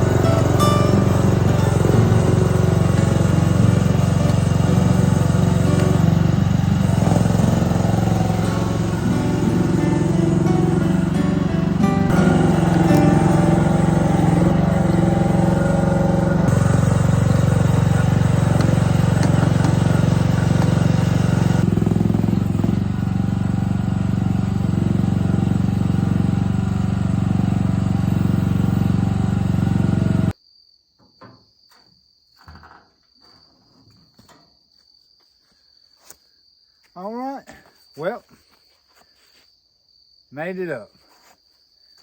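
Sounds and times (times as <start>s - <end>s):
vehicle engine and road drone: 0.0s - 30.4s
high insect trill: 30.3s - 42.0s.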